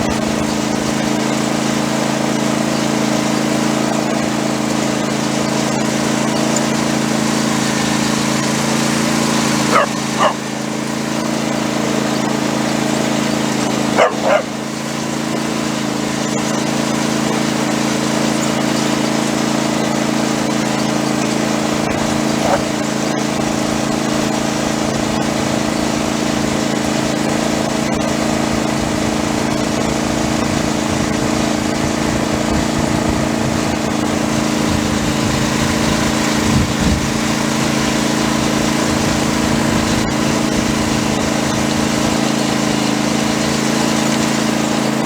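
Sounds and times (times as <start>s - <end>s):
small engine running: 0.0s - 45.0s
dog barking: 9.7s - 10.5s, 14.0s - 14.6s, 22.4s - 22.7s.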